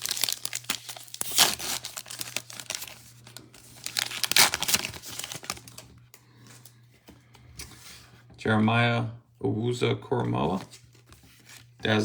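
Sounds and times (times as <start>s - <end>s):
wrapper tearing and crinkling: 0.0s - 5.9s.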